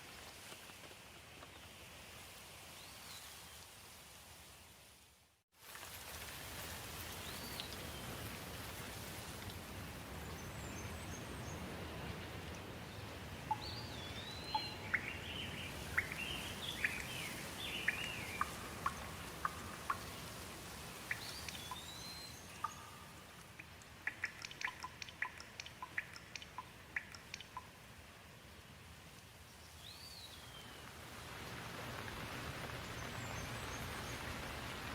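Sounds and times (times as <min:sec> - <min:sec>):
steady rain falling: 0:00.0 - 0:34.9
sharp drip-like ticks: 0:05.6 - 0:08.0, 0:12.4 - 0:12.7, 0:13.3 - 0:28.1, 0:29.1 - 0:29.3.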